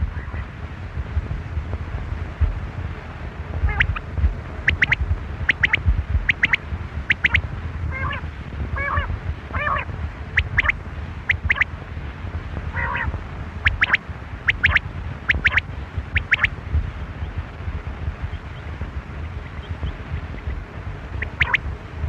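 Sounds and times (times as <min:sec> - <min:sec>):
low rumble: 0:00.0 - 0:22.0
quail calling: 0:03.7 - 0:04.0, 0:04.7 - 0:08.2, 0:10.4 - 0:11.7, 0:12.8 - 0:13.1, 0:13.7 - 0:15.6, 0:16.2 - 0:16.5, 0:21.2 - 0:21.6.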